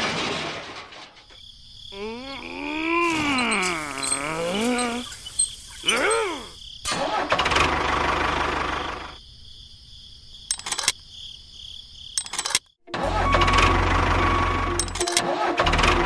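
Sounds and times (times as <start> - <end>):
engine-like mechanical noise: 3.9 - 9.2, 12.2 - 16.0
scattered clicks: 10.5 - 11.0, 12.2 - 12.7, 14.8 - 15.3.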